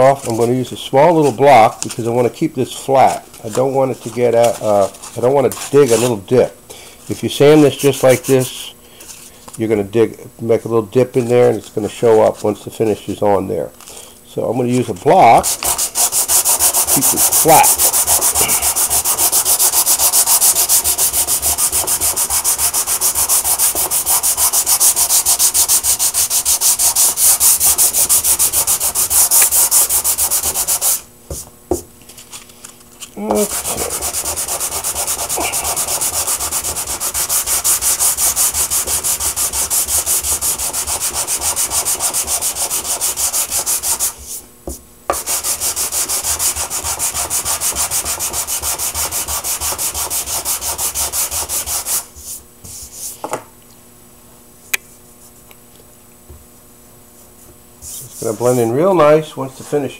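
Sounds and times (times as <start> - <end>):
sandpaper scratching on wood: 15.3 - 31.0, 33.3 - 44.4, 45.1 - 53.2, 57.8 - 58.7.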